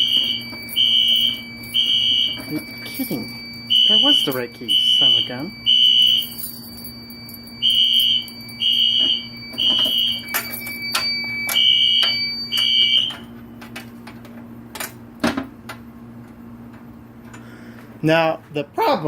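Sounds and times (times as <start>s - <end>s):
fire alarm beeping: 0.0s - 13.6s.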